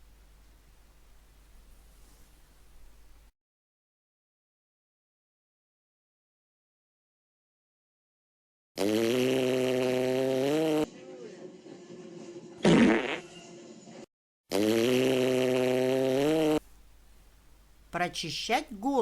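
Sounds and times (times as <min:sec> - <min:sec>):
fart sound effect: 0:08.8 - 0:10.9, 0:12.6 - 0:13.4, 0:14.5 - 0:16.6.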